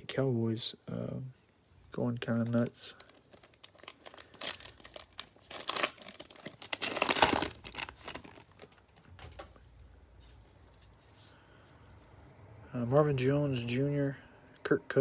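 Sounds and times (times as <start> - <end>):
faint low hum: 0.0 - 15.0
wrapper crinkling and tearing: 2.3 - 9.5.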